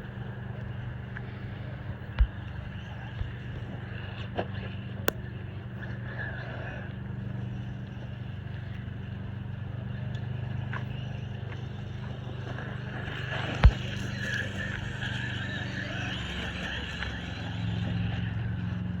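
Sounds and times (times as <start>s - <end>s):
rc truck motor hum: 0.0s - 19.0s
tyre noise: 10.6s - 18.9s.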